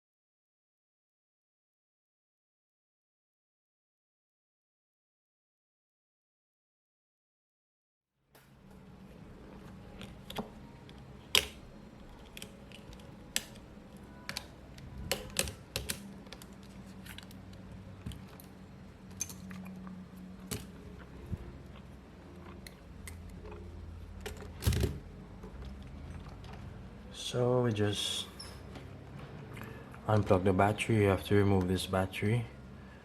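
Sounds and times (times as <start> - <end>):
low steady hum: 8.4 - 33.0.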